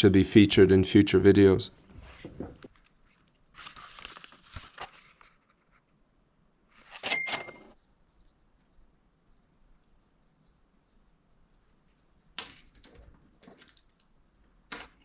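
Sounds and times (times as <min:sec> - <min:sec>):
plastic packaging crinkling: 0:02.7 - 0:05.5
sharp clatter with ring: 0:07.0 - 0:07.8.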